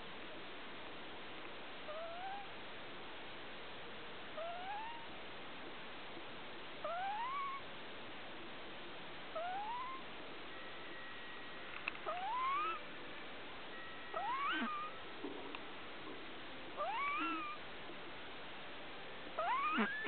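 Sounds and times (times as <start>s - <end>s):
cat snoring with high whistle: 13.7s - 15.0s.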